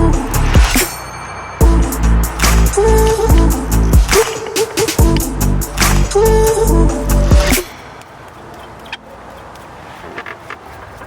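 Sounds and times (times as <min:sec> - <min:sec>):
music with bass and drums: 0:00.0 - 0:00.9, 0:01.6 - 0:07.7.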